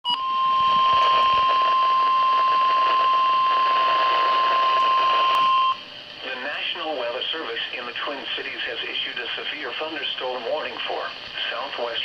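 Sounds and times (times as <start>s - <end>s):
high-pitched alarm tone: 0.1s - 5.8s
light static: 0.6s - 12.0s.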